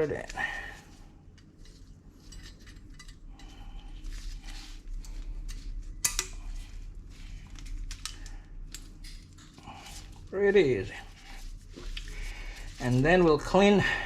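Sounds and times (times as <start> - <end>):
metal clip clicking: 6.0 - 6.4.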